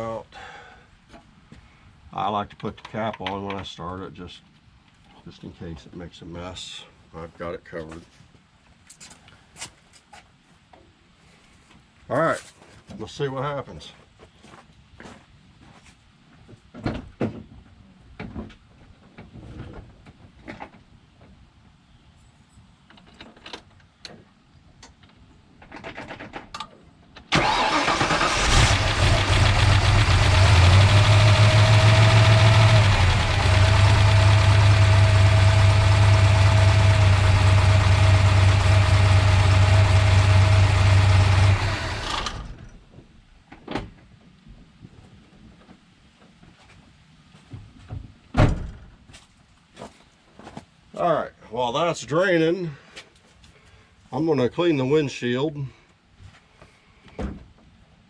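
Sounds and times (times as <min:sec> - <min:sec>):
pickup engine starting and idling: 0:27.3 - 0:42.8.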